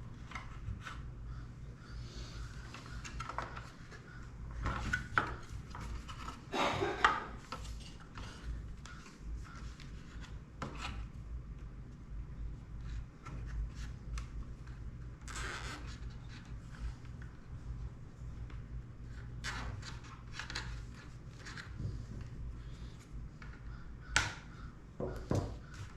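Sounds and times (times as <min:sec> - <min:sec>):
steady low hum: 0:00.0 - 0:25.9.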